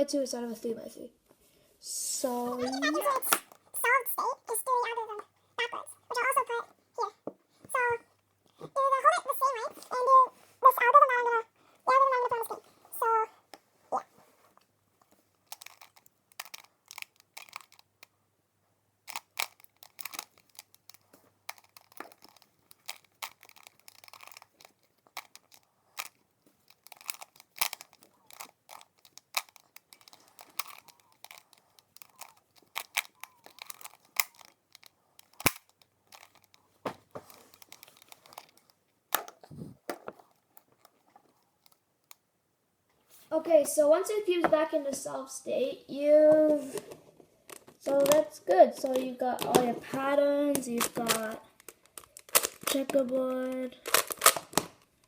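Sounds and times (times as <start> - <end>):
puzzle cube clicking as turned: 2.7 - 6.6, 15.4 - 18.1, 19.1 - 36.6, 37.2 - 42.2, 50.5 - 53.2, 53.8 - 54.9.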